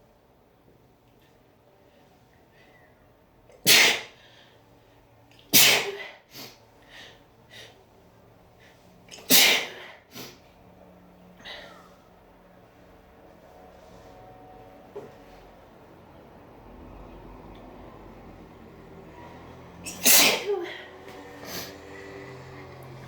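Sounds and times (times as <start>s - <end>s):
person sneezing: 3.7s - 4.2s, 5.5s - 6.5s, 9.2s - 10.4s, 19.9s - 20.9s
quick breaths: 5.9s - 10.6s, 11.4s - 12.3s.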